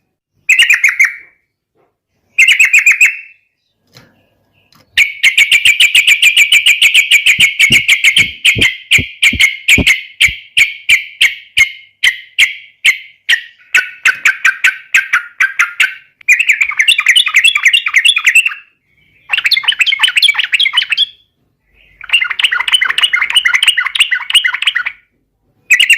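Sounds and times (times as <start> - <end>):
bird singing sharp chirps: 2.3 - 10.8
bubbling bird chatter: 5.0 - 10.4.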